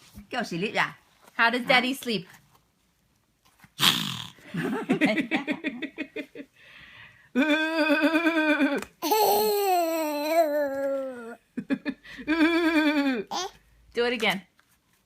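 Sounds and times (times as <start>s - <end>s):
toddler imitating a snore: 3.8s - 4.4s.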